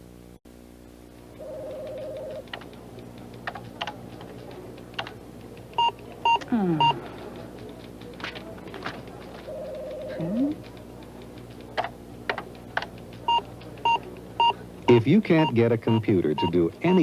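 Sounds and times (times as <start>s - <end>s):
keyboard keys clicking: 1.7s - 17.0s
computer beeps: 5.8s - 7.0s, 13.3s - 17.0s.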